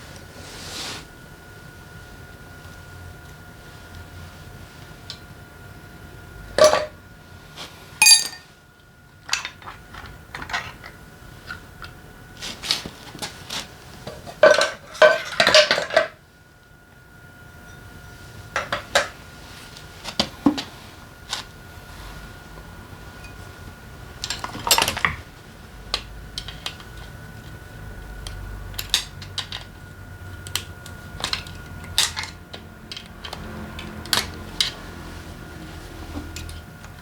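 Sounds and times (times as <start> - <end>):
metal parts and tools clinking: 8.0 - 8.4.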